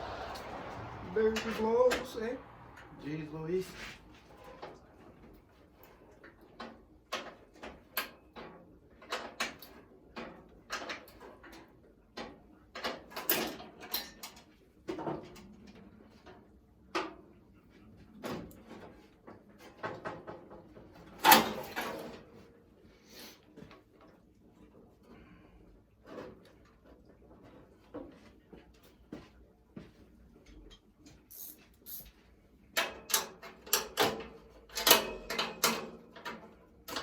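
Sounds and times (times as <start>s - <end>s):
hand tools and metal parts clanking: 32.8s - 37.0s.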